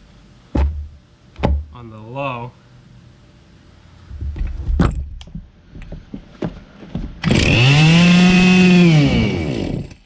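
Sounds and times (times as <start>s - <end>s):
chainsaw engine revving: 7.2s - 10.0s.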